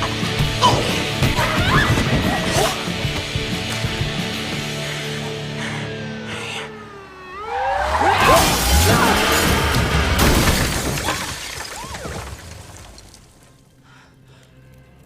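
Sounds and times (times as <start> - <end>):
film music: 0.0 - 10.8, 12.2 - 15.0
crash with shattering: 8.2 - 13.4.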